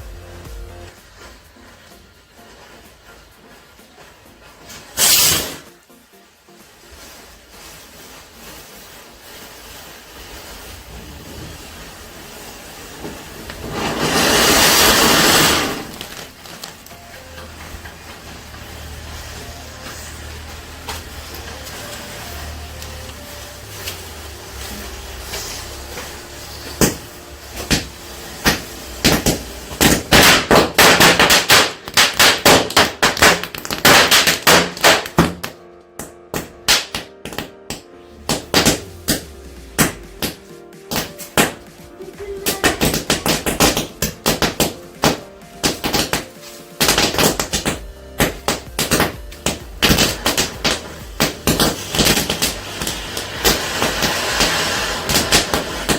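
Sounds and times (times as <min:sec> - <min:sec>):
fuse hiss: 0:00.0 - 0:30.4, 0:49.8 - 0:55.9
firecrackers banging: 0:08.0 - 0:55.9.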